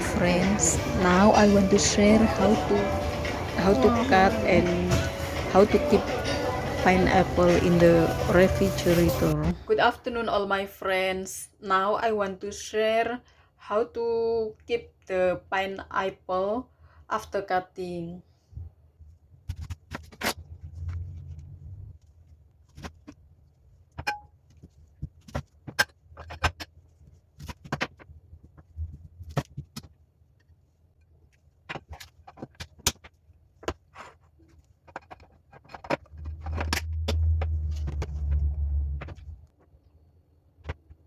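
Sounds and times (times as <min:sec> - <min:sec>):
low handling rumble: 0:36.2 - 0:39.5.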